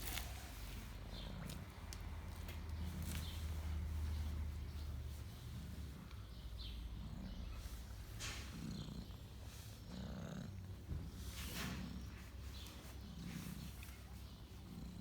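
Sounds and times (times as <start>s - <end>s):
cat purring: 1.0s - 15.0s.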